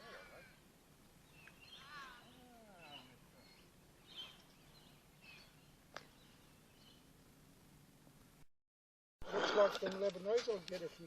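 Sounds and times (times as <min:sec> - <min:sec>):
faint bird calls: 0:01.3 - 0:07.1.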